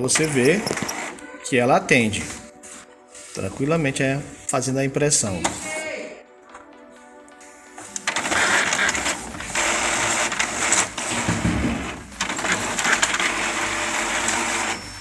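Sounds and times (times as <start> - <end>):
inkjet printer printing: 0.0 - 5.7, 7.4 - 15.0.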